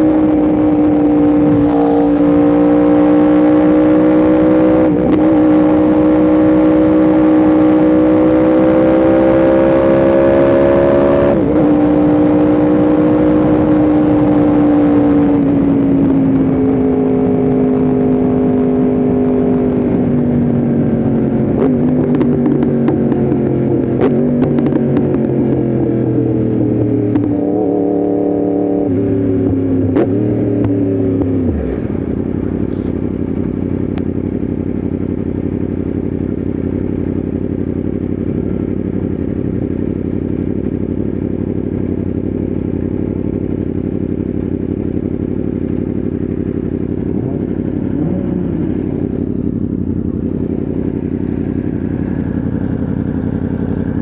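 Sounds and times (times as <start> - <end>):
motorcycle engine revving: 0.0 - 54.0
rushing noise: 0.2 - 5.0.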